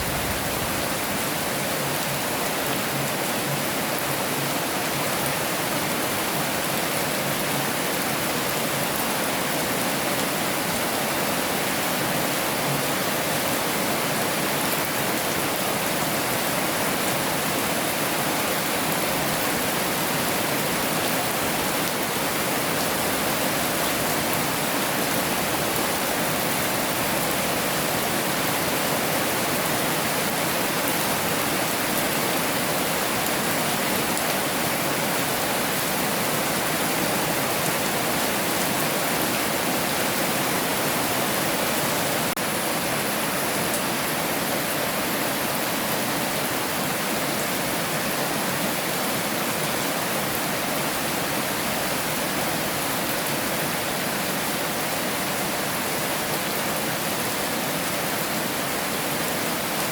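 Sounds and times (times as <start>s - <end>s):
heavy rain hissing: 0.0s - 1.8s.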